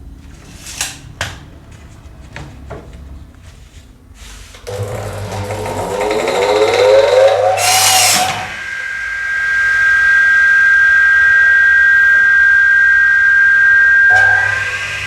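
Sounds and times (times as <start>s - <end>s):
power tool motor whining: 4.7s - 8.8s
harsh burst of noise: 4.7s - 15.0s.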